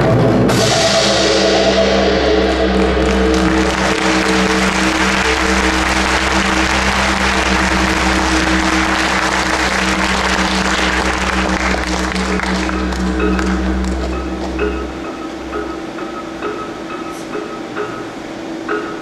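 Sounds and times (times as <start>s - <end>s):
steady low tones: 0.0s - 19.0s
audience applauding: 2.4s - 14.4s.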